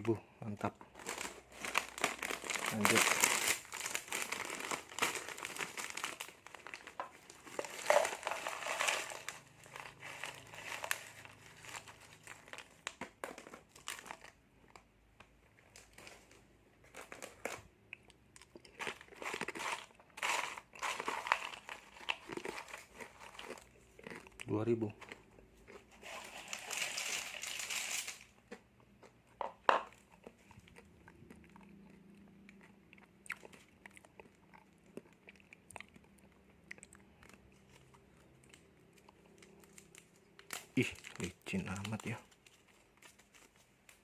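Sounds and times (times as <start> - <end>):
plastic packets crinkling: 0.7 - 14.4, 15.7 - 17.6, 18.7 - 25.2, 25.9 - 28.4, 37.6 - 44.0.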